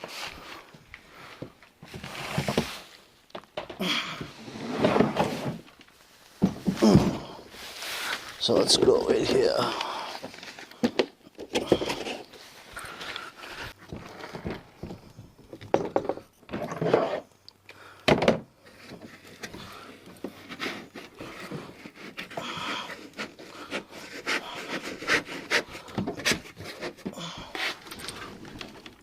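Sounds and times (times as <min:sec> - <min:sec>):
person breathing heavily: 0:09.4 - 0:11.0, 0:11.6 - 0:15.1, 0:22.3 - 0:26.1, 0:27.0 - 0:28.5.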